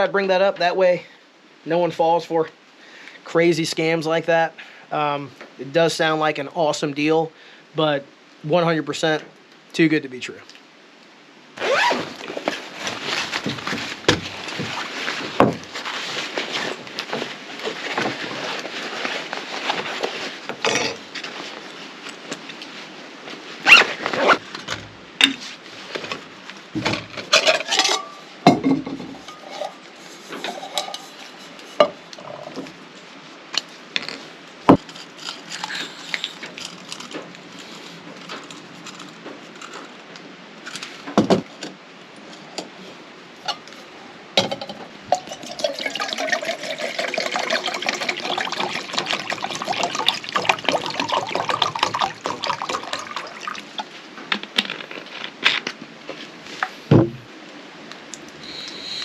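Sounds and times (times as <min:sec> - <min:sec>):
metal cookware clattering: 0:27.2 - 0:29.8, 0:30.4 - 0:31.2
liquid pouring into a pot: 0:45.2 - 0:53.8.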